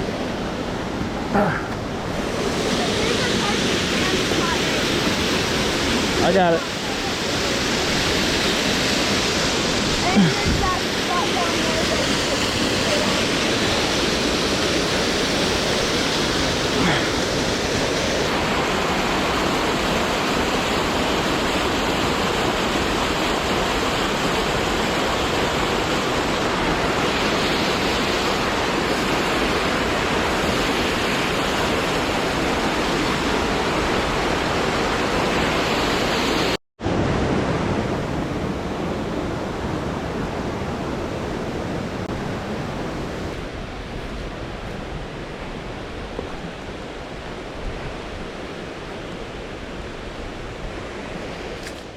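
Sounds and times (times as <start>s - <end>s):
waterfall rushing: 0.0s - 51.5s.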